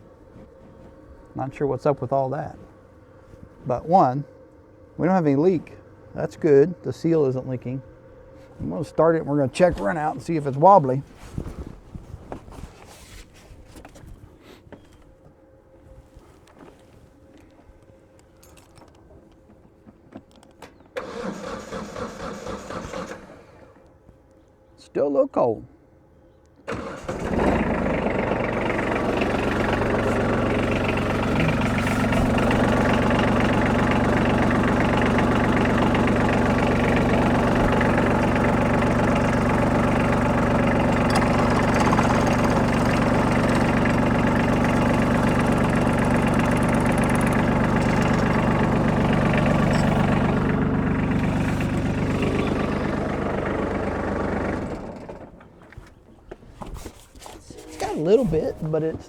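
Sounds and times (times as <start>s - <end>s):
diesel tractor engine idling: 4.9s - 11.1s, 26.7s - 55.6s.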